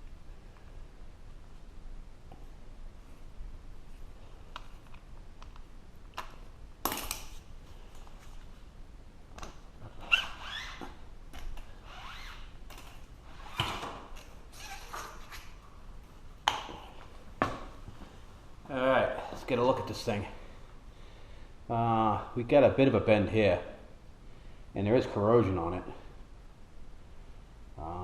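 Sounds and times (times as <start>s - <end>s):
squeak: 10.0s - 10.9s, 11.8s - 12.5s, 14.5s - 15.5s.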